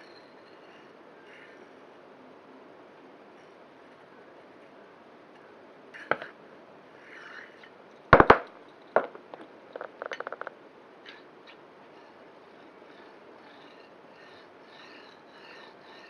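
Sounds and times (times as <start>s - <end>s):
hard objects clinking and knocking: 8.2s - 10.5s
rattling ticks: 9.0s - 10.5s.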